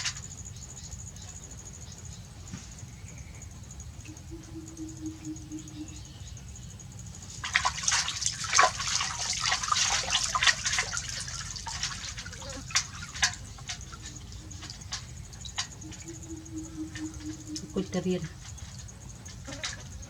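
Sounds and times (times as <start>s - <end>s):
water splashing in a bath: 7.3s - 20.0s.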